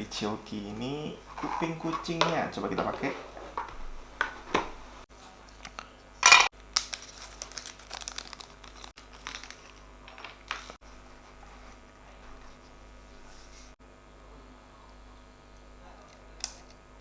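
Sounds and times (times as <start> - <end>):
packaging crinkling and rustling: 6.5 - 10.8.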